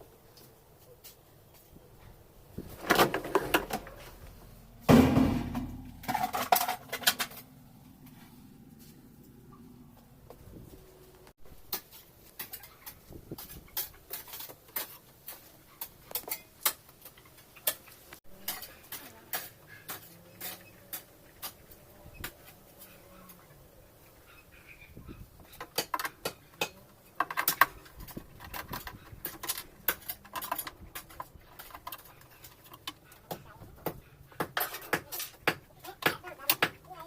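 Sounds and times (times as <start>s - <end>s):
hand tools clicking and clinking: 25.5s - 36.9s.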